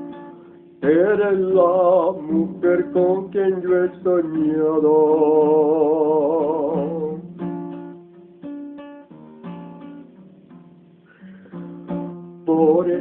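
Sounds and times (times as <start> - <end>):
acoustic guitar plucking and strumming: 0.0 - 13.0
man singing with vibrato: 0.8 - 7.5, 12.4 - 13.0.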